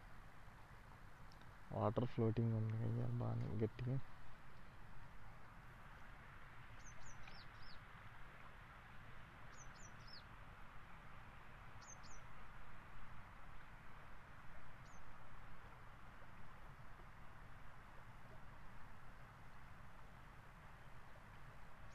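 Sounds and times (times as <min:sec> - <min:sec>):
steady outdoor hiss: 0:00.0 - 0:21.9
small bird chirping: 0:06.8 - 0:07.8, 0:09.5 - 0:10.2, 0:11.8 - 0:12.2.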